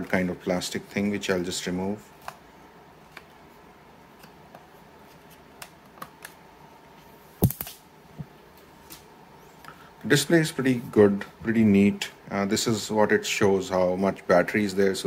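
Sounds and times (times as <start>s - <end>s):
sharp snaps: 7.4s - 7.9s.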